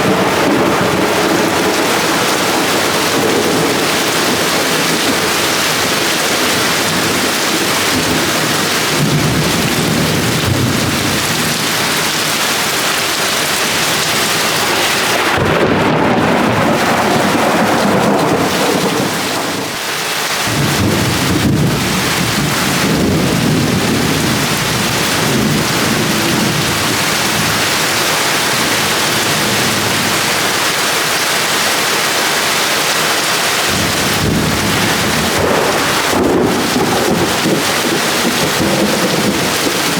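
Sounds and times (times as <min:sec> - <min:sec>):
thunder rumbling: 0:00.0 - 0:12.8, 0:13.4 - 0:19.8, 0:20.5 - 0:30.7, 0:33.6 - 0:39.9
heavy rain pouring: 0:00.0 - 0:39.9.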